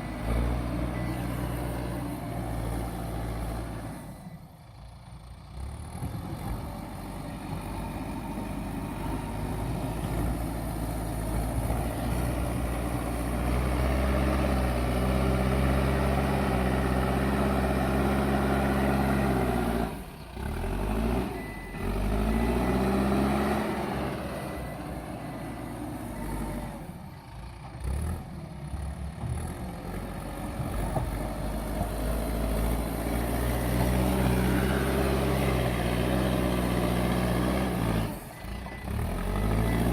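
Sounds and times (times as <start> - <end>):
diesel engine revving under load: 0.0 - 4.6, 5.4 - 39.9
faint reversing alarm tone: 0.0 - 4.7, 21.2 - 27.4, 32.5 - 39.9.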